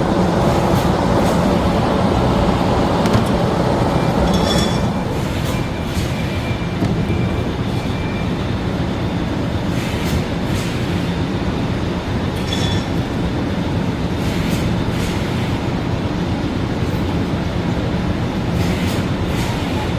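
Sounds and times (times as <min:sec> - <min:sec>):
machine mechanical rumble: 0:00.0 - 0:09.3.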